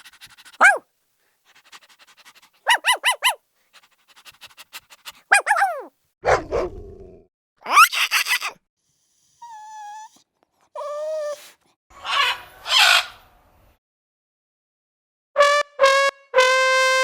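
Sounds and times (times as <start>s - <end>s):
dog barking: 0.0s - 0.8s, 2.3s - 3.4s, 5.0s - 6.8s
dog panting: 0.0s - 0.8s, 1.4s - 5.9s
dog yipping: 0.4s - 0.8s, 2.6s - 3.4s, 5.1s - 6.7s, 7.7s - 8.6s
dog yelping: 0.5s - 0.8s, 2.6s - 3.4s, 5.2s - 6.7s, 7.6s - 8.6s.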